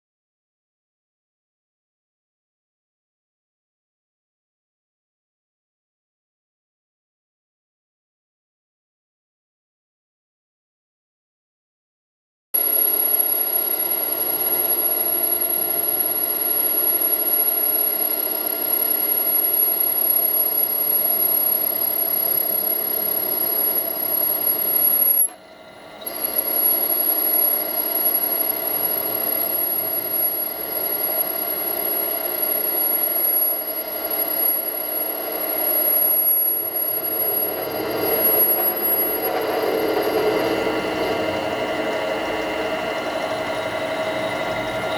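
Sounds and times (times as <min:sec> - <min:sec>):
power tool whining: 0:12.6 - 0:44.9.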